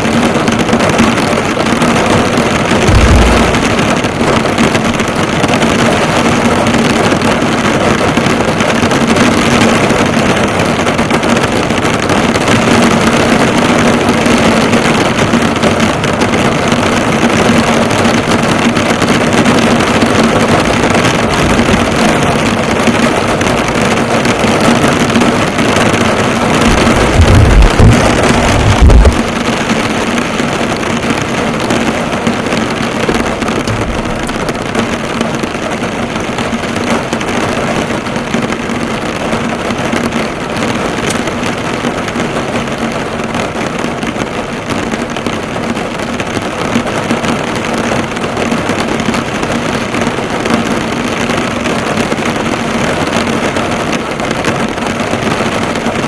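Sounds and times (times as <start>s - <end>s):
heavy rain drumming on a car: 0.0s - 56.0s
low rumble: 2.8s - 5.6s, 26.6s - 29.6s, 33.0s - 36.9s.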